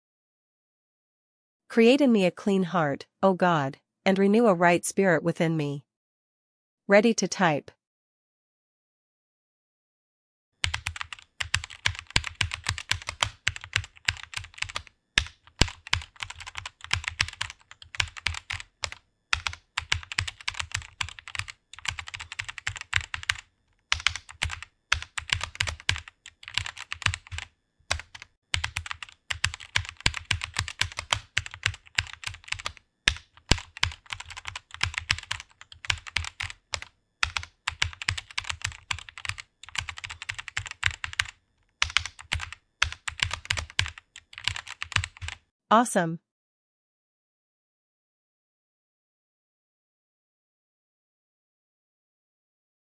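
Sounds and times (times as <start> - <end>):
fast typing on keyboard: 10.6 - 45.4.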